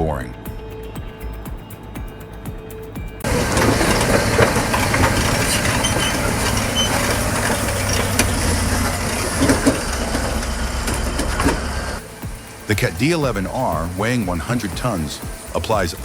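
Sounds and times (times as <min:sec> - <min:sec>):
clattering tracks: 0:03.2 - 0:16.0
low diesel engine: 0:03.2 - 0:16.0.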